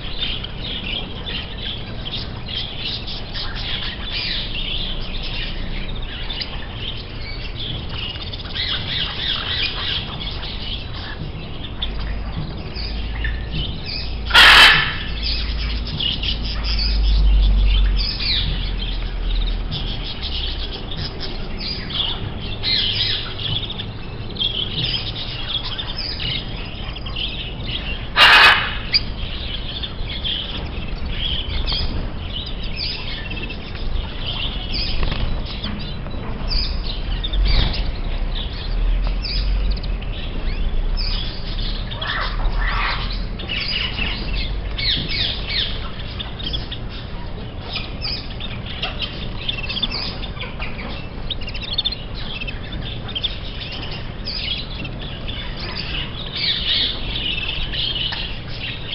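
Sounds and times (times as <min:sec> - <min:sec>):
birds chirping and calling: 0:00.0 - 0:58.9
loud harsh sounds: 0:14.3 - 0:15.2.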